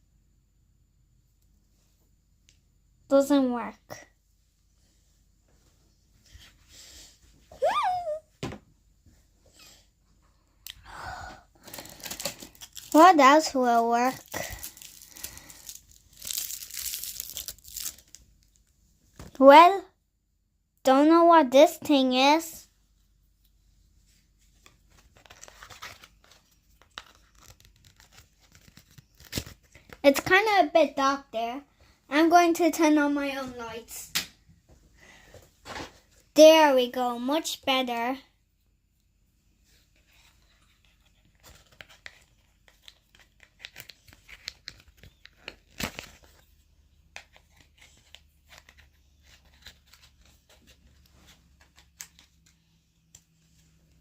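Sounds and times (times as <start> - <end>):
packaging rustling and tearing: 11.6 - 18.7, 25.0 - 30.0, 40.8 - 46.5
small clicks and scrapes: 24.6 - 30.0.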